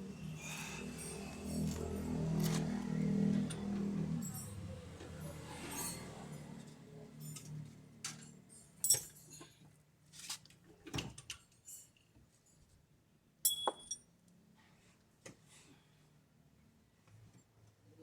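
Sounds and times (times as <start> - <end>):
metal tools clinking: 0.4 - 2.8
sharp ringing metal clink: 13.4 - 14.1.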